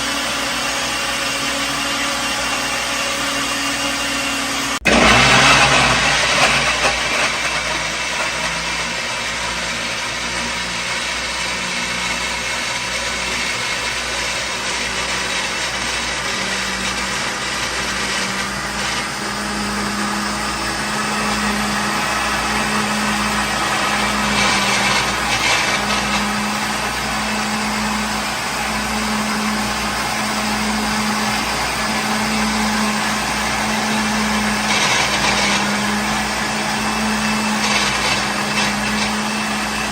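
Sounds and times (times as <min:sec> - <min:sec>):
electric blender whirring: 0:00.0 - 0:39.9.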